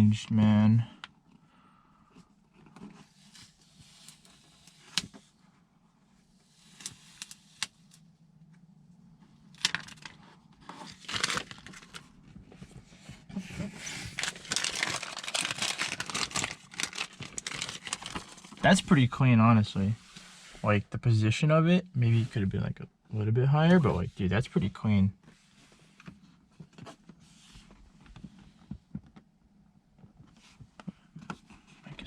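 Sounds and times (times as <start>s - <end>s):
transfer tape peeling crackle: 6.6s - 8.0s, 9.6s - 12.1s, 14.0s - 18.6s
small clicks and rustles: 25.8s - 32.0s.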